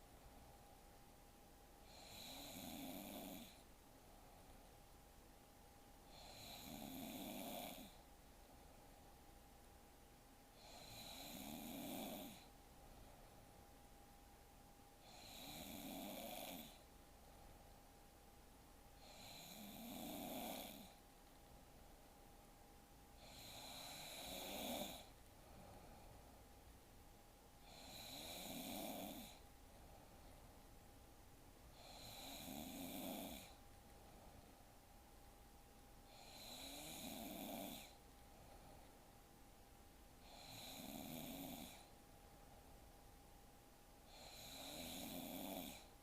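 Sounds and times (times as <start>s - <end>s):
woman snoring faintly: 1.8s - 3.7s, 6.1s - 8.0s, 10.6s - 12.6s, 15.0s - 16.9s, 19.0s - 21.0s, 23.2s - 25.2s, 27.6s - 29.4s, 31.7s - 33.6s, 36.1s - 38.0s, 40.2s - 41.9s, 44.1s - 46.0s.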